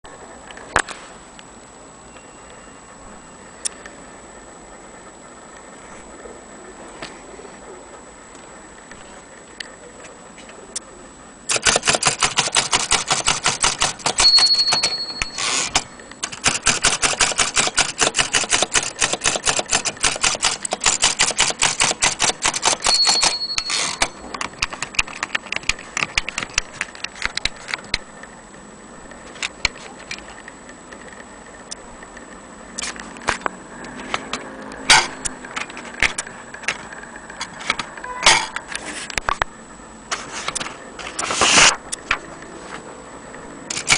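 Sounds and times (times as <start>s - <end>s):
typewriter keystrokes: 11.5s - 27.5s
typewriter carriage bell: 11.7s - 24.7s.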